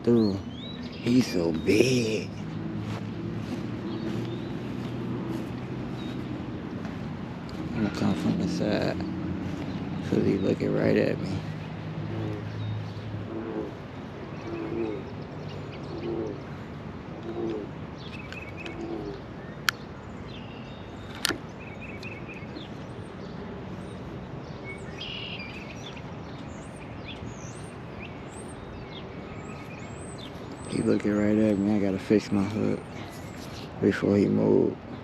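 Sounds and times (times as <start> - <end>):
birds chirping: 0.0 - 35.0
short low calls: 7.5 - 17.8.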